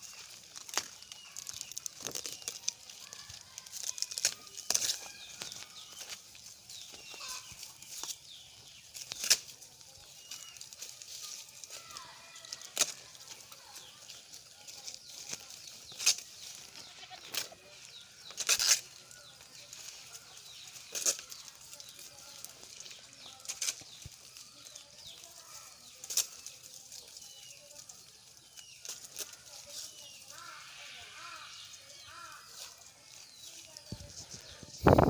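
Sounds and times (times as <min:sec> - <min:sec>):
sharp rustling or crackling: 0:00.0 - 0:35.0
faint bird chirps: 0:04.0 - 0:09.0.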